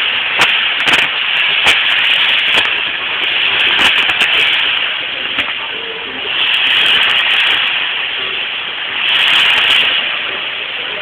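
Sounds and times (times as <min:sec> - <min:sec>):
fireworks spraying hiss: 0:00.0 - 0:11.0.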